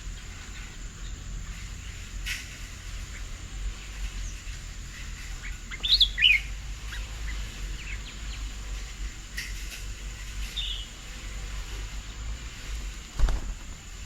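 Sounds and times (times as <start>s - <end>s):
steady low rumble: 0.0s - 14.0s
bird chirping: 5.2s - 8.6s, 10.5s - 11.0s.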